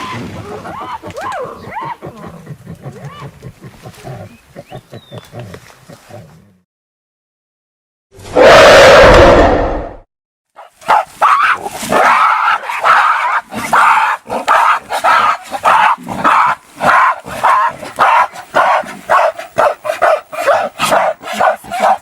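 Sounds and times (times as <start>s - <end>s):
gorilla roar: 8.4s - 10.0s
gorilla barking calls: 10.9s - 22.0s.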